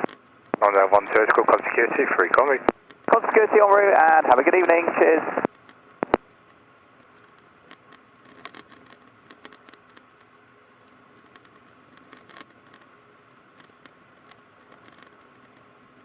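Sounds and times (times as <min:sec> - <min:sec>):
radio hiss: 0:00.0 - 0:06.3
radio clicks and crackles: 0:00.0 - 0:13.0, 0:13.6 - 0:15.7.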